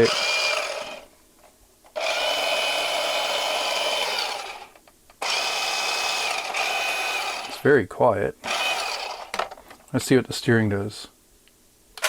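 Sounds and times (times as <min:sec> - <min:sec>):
toy car motor whine: 0:00.0 - 0:01.1, 0:02.0 - 0:07.6, 0:08.4 - 0:09.4.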